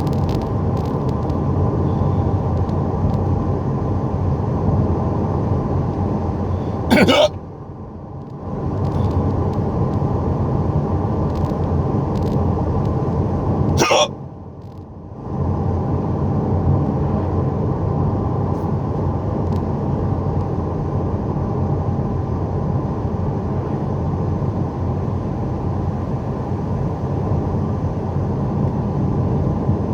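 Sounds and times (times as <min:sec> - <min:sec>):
car cabin road noise: 0:00.0 - 0:07.4, 0:08.2 - 0:14.0
person hiccuping: 0:06.9 - 0:07.4, 0:13.8 - 0:14.1.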